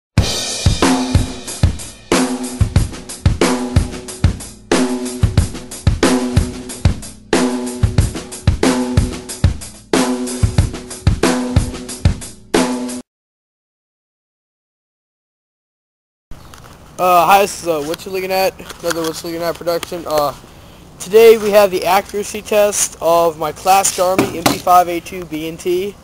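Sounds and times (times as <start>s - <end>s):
drum kit beat: 0.2s - 13.0s, 24.0s - 25.0s.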